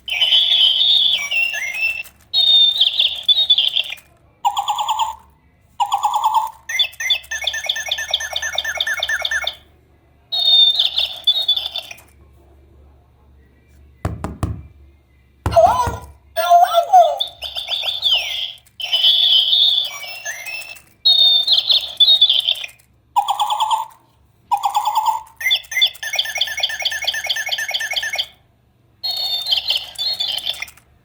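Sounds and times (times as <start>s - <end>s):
electric toy bird chirping: 0.0s - 9.7s, 10.3s - 12.2s, 15.5s - 28.4s, 29.0s - 30.9s
knocks: 14.1s - 14.8s.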